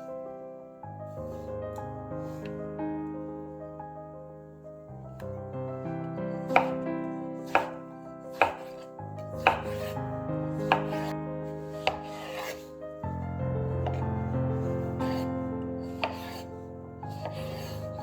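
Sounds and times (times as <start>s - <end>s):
piano music: 0.0s - 18.0s
knife cutting on cutting board: 6.5s - 6.8s, 7.5s - 10.0s, 10.6s - 11.1s, 11.8s - 12.7s, 15.0s - 15.3s, 15.9s - 16.5s, 17.1s - 17.8s.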